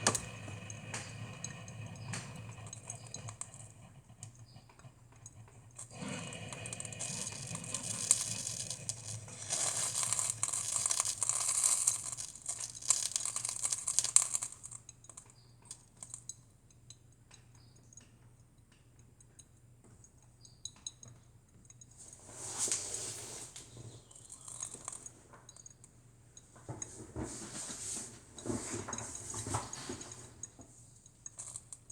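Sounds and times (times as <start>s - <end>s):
coffee maker sputtering and hissing: 0.0s - 14.8s.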